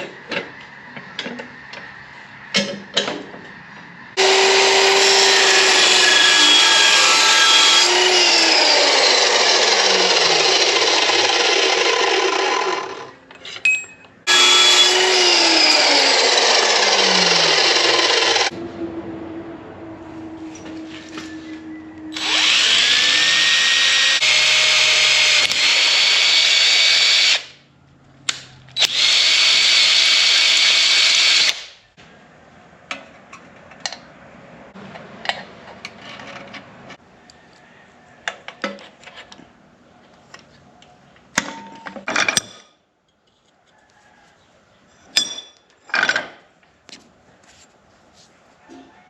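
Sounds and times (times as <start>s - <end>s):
power tool whining: 4.2s - 13.2s, 14.3s - 18.6s, 22.1s - 27.6s, 28.8s - 31.7s.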